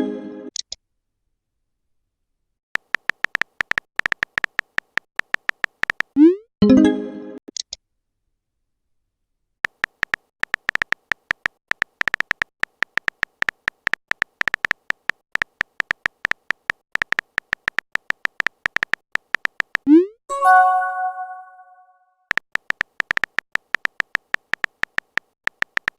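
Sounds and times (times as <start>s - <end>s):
bright chime: 20.3s - 21.8s.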